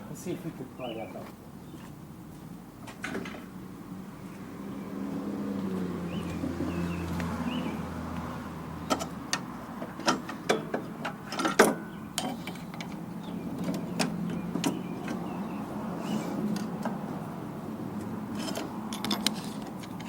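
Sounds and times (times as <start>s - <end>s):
metal clanks and clicks: 8.9s - 15.3s, 18.3s - 20.0s.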